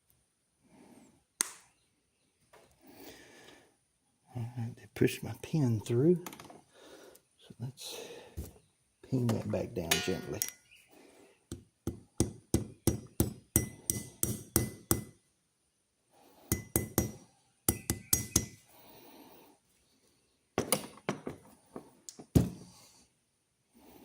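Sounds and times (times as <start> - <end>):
small hammer tapping metal pin: 11.5 - 15.1, 16.5 - 18.6.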